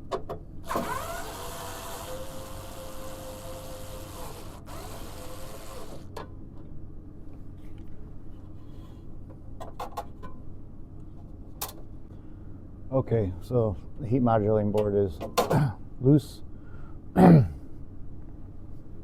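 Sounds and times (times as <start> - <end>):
small electric motor whirring: 0.6 - 6.1.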